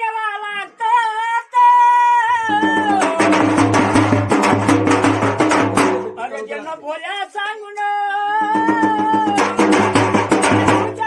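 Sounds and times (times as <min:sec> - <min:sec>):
man singing a long high note: 0:00.0 - 0:03.7, 0:07.1 - 0:11.0
fast rhythmic drum strikes: 0:02.4 - 0:06.3, 0:08.3 - 0:11.0.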